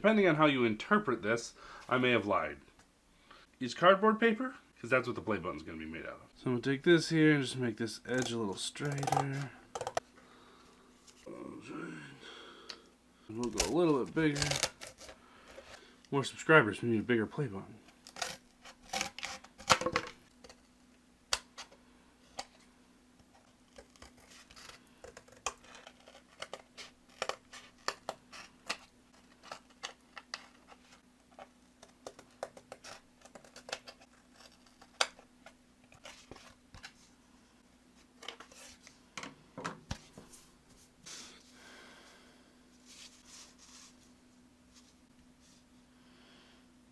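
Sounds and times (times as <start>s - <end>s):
scissors cutting cardboard: 23.7s - 30.8s, 31.8s - 35.2s.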